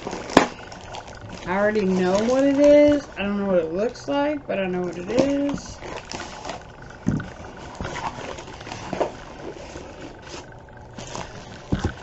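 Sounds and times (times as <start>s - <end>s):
packaging rustling: 0.0s - 12.0s.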